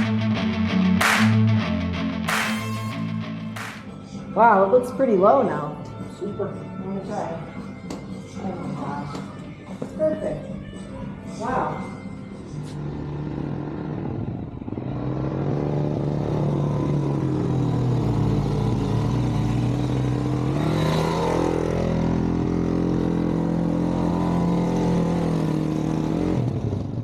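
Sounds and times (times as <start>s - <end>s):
motorcycle engine running: 0.0s - 0.4s, 12.6s - 27.0s.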